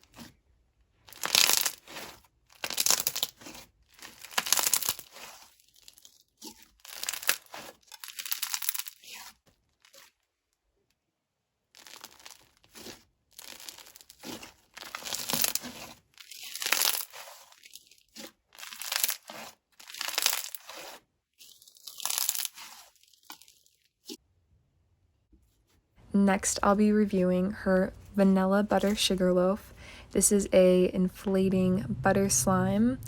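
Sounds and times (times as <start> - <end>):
hands squishing crunchy slime: 1.0 - 10.2, 11.8 - 23.8.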